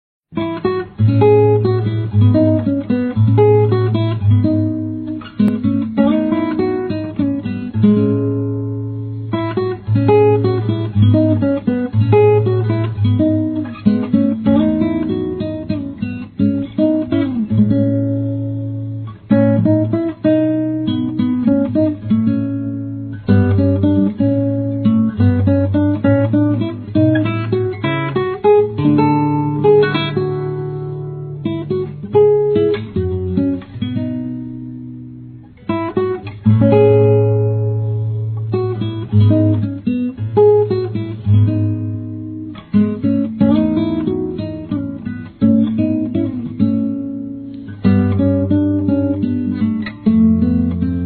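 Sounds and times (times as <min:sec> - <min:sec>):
acoustic guitar: 0:00.3 - 0:51.0.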